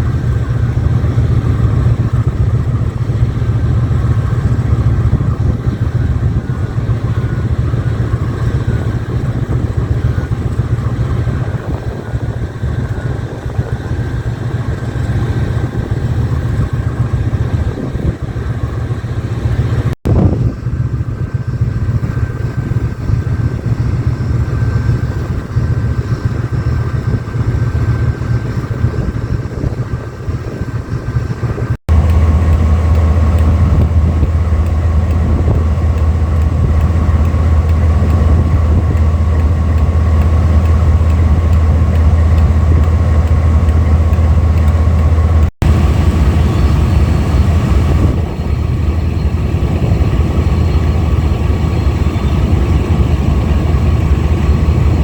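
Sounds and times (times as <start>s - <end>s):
locomotive engine running: 0.0s - 55.0s
faint steady whine: 31.9s - 55.0s.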